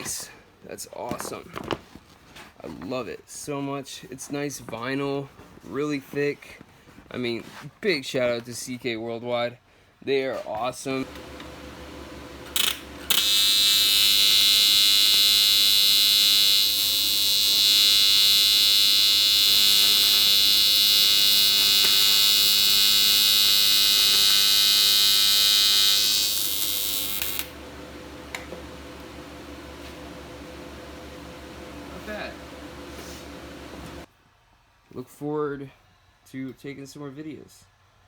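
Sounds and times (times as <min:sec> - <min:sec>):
electric buzz with high whine: 0:11.0 - 0:34.1.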